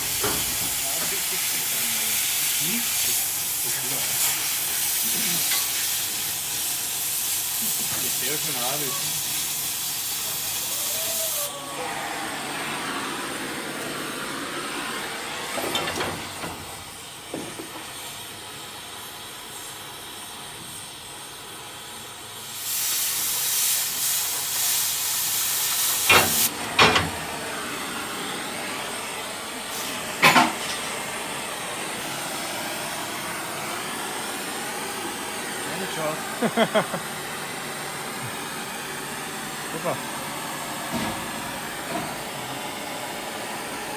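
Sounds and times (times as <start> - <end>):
cutting torch hissing: 0.0 - 43.9
high oxygen jet hiss: 0.0 - 43.9.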